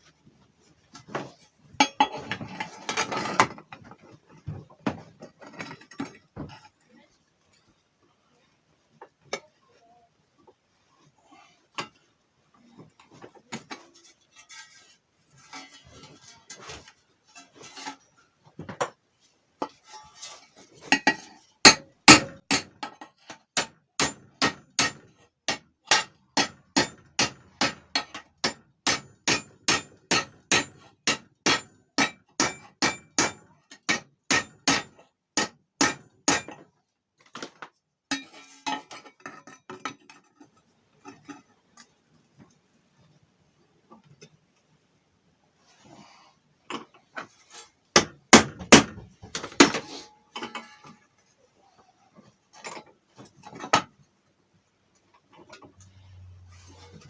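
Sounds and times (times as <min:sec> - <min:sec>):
knocks and handling noises: 0:48.0 - 0:51.2.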